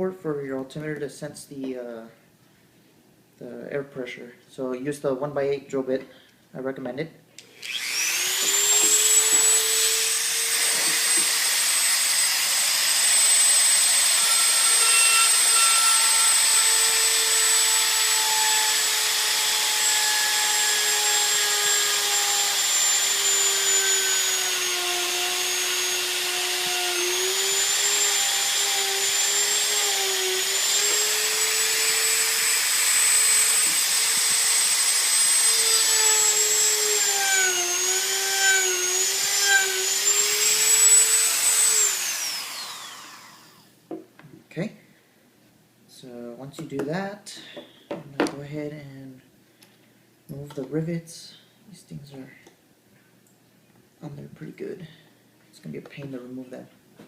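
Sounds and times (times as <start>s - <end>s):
electric drill whining: 7.5s - 43.7s.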